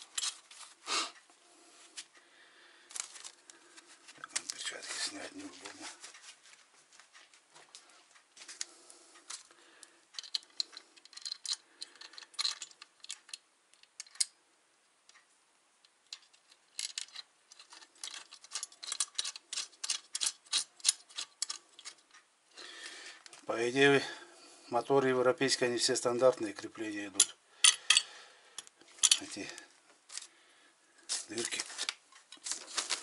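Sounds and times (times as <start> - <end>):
small metal hardware clinking: 10.2 - 14.3, 27.2 - 30.2.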